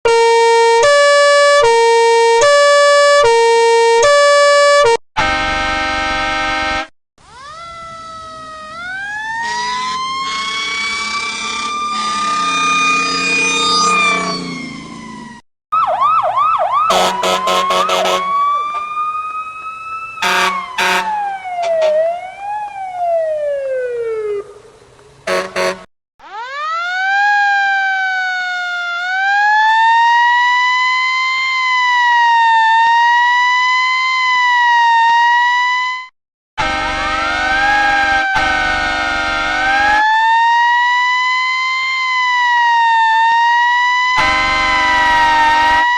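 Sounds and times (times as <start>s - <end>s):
fire truck siren: 0.0s - 45.9s
short horn blasts: 4.0s - 6.9s, 16.9s - 18.3s, 20.2s - 21.2s, 25.3s - 25.9s, 36.6s - 40.0s, 44.2s - 45.9s.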